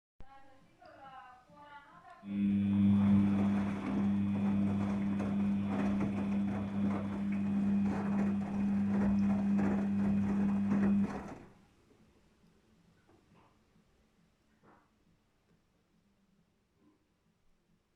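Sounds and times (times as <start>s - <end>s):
washing machine humming: 2.3s - 11.6s.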